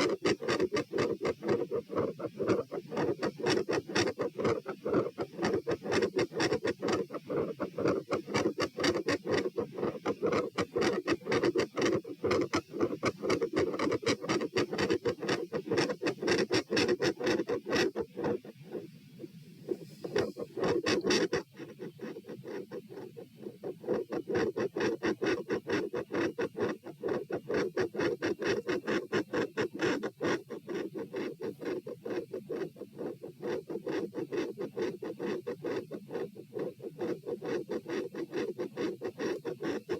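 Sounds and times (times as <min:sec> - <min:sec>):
fast heartbeat through stethoscope: 0:00.0 - 0:18.9
scratchy stethoscope contact noise: 0:00.0 - 0:39.9.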